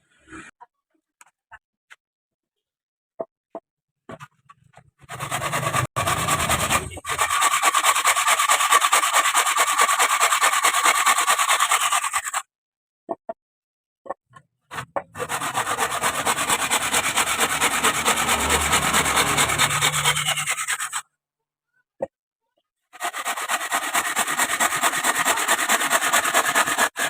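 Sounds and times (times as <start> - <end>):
wood lathe scraping: 5.1 - 12.4, 14.7 - 21.0, 23.0 - 27.0.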